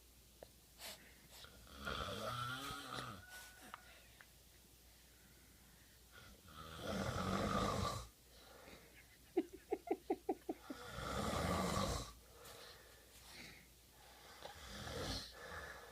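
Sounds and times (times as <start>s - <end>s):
man snoring: 1.6s - 3.2s, 6.4s - 8.1s, 10.7s - 12.2s, 14.2s - 15.9s.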